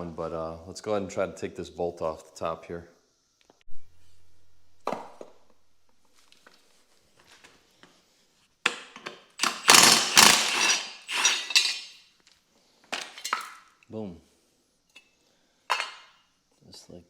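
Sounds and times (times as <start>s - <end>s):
impact wrench hammering: 8.7s - 11.9s.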